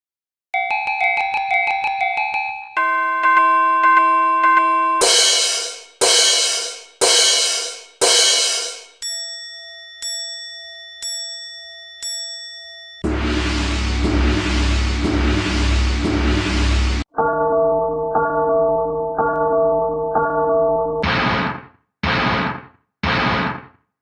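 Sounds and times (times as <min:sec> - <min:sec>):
ringing bell dings: 0:00.6 - 0:05.9, 0:08.8 - 0:13.0
crashing cymbal-like strikes: 0:05.0 - 0:08.9, 0:13.0 - 0:17.1
loud low rumbling noise: 0:13.0 - 0:17.1.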